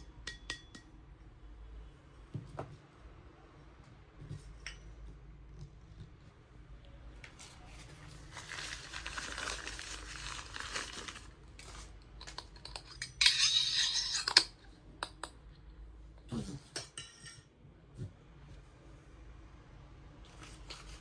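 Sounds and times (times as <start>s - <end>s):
packaging rustling and crinkling: 7.3s - 12.0s.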